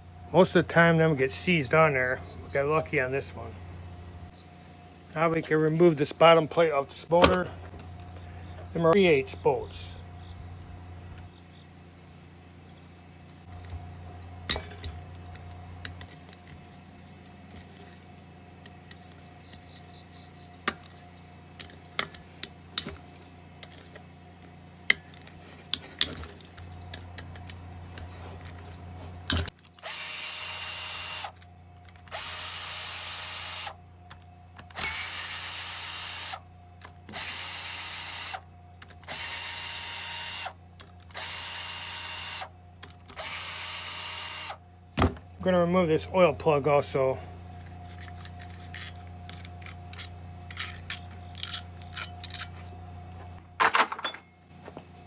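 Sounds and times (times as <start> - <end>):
power tool bursts: 29.8 - 31.4, 32.1 - 33.8, 34.7 - 36.4, 37.1 - 38.4, 39.0 - 42.5, 43.1 - 44.6.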